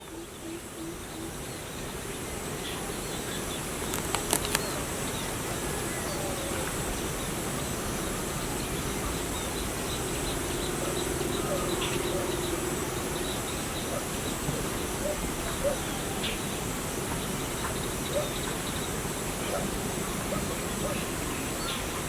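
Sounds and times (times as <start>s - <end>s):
birds calling: 2.5s - 22.0s
sharp clicks: 3.8s - 4.7s
steady buzzing: 7.0s - 15.6s
short low calls: 9.1s - 15.4s.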